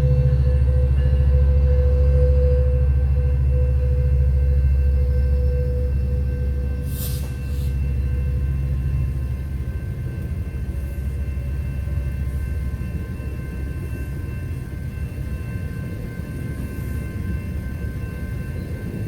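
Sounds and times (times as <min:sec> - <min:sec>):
train rumble: 0:00.0 - 0:19.0
short hisses: 0:06.9 - 0:07.7.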